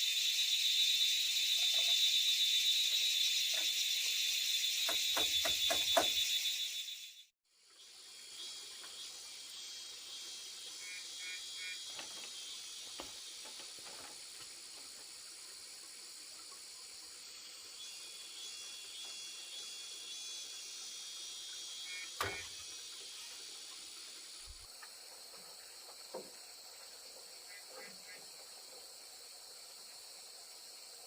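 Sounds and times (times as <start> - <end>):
steady high hiss: 0.0 - 5.3.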